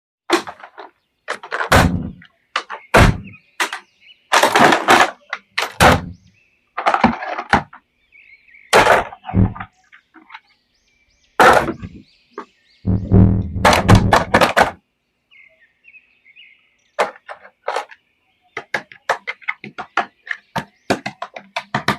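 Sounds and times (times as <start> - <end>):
plastic toy figures knocking: 0.3 - 6.2, 6.8 - 7.8, 8.7 - 10.4, 11.4 - 12.0, 12.9 - 14.8, 17.0 - 18.0, 18.6 - 21.9.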